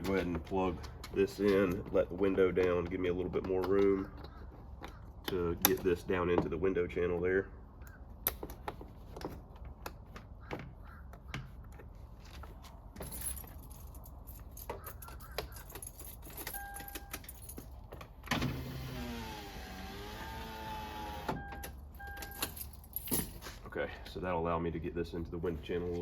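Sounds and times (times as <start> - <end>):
short steady beeps: 16.6 - 17.2
power window motor: 18.3 - 21.6.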